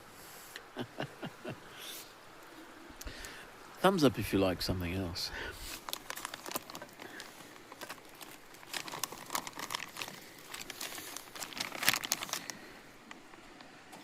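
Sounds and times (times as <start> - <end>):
wood fire crackling and popping: 5.8 - 12.5.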